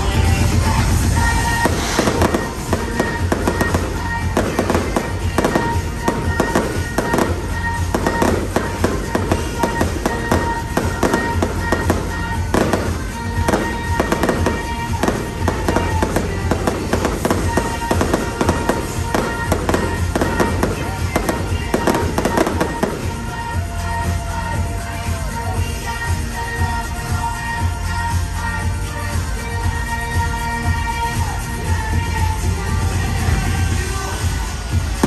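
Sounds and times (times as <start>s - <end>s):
fireworks bursting and crackling: 0.0s - 26.0s
music over loudspeakers: 0.0s - 35.0s.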